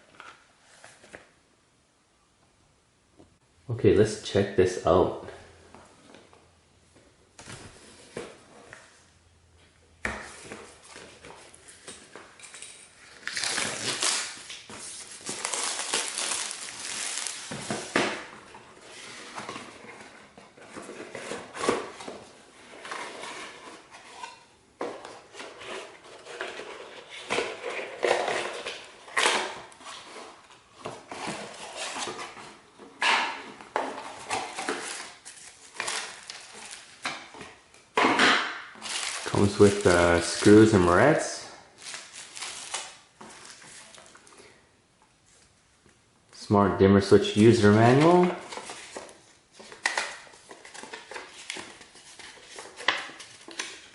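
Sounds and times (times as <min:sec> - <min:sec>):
packaging rustling: 0:10.3 - 0:24.2, 0:25.2 - 0:37.9, 0:38.7 - 0:41.1, 0:41.7 - 0:44.4, 0:47.8 - 0:53.9.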